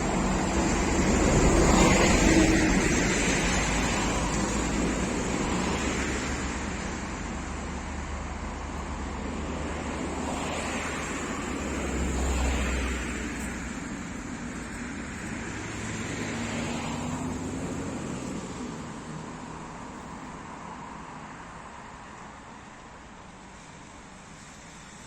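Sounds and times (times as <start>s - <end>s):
road vehicle rumble and hiss: 0.0s - 25.0s.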